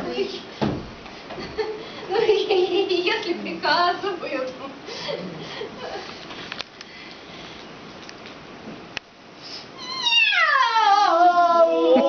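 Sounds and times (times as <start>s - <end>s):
person imitating cat meow: 9.8s - 12.0s.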